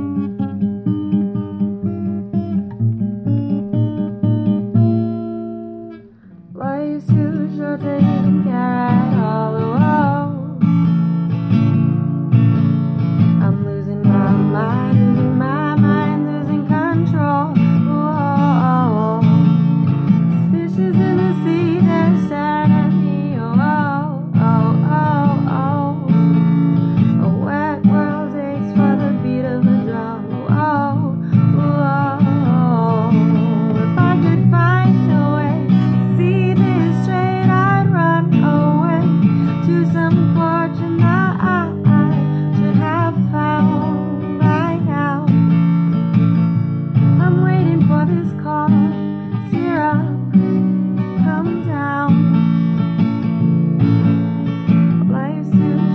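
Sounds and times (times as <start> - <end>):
person singing: 6.5 - 10.7, 13.4 - 19.5, 20.3 - 26.4, 27.0 - 45.4, 47.2 - 50.3, 51.2 - 52.4.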